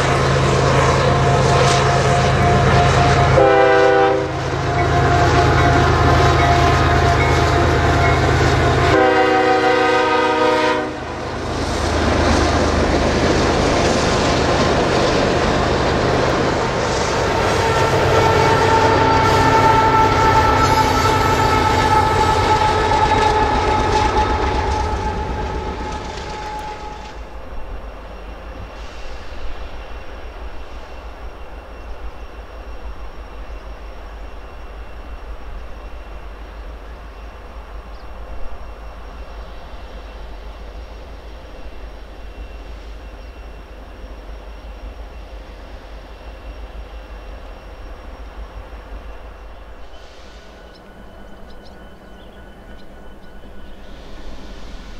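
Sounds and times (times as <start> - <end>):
train horn chord: 0.0 - 11.4, 16.5 - 27.5
train wheels rumbling on rail: 0.0 - 54.9.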